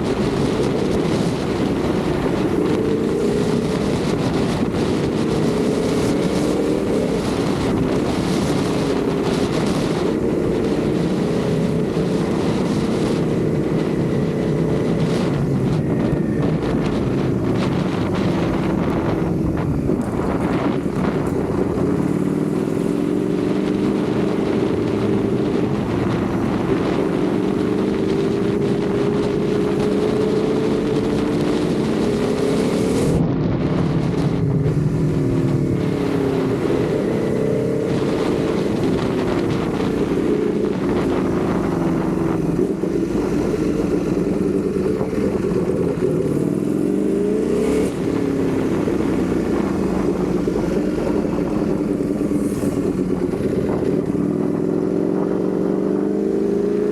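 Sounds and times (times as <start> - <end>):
motorbike engine revving: 0.0 - 56.9.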